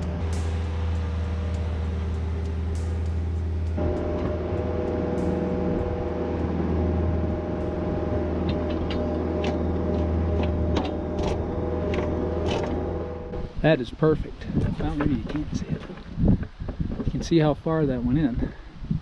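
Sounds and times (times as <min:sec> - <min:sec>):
heavy machine engine running: 0:00.0 - 0:13.7
high whine: 0:00.0 - 0:15.5.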